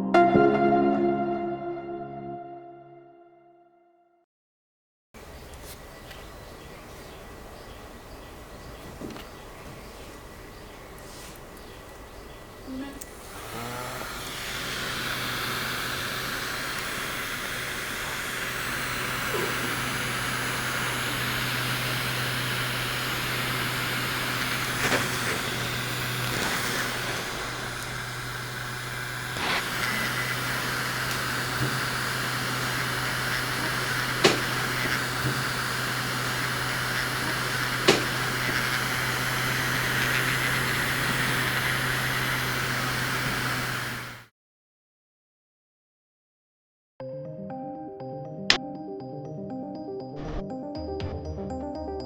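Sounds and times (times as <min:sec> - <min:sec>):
air conditioner fan running: 0:05.2 - 0:44.3.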